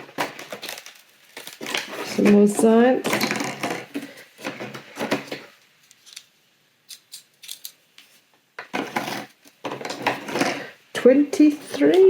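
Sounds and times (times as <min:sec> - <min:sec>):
cardboard rustling and scraping: 0:00.0 - 0:06.2, 0:08.0 - 0:10.8.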